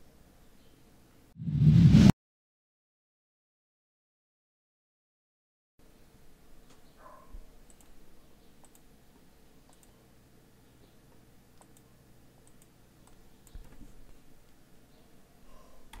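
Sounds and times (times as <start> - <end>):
faint computer mouse clicks: 7.7 - 8.0, 8.6 - 8.9, 9.7 - 10.0, 11.6 - 14.0.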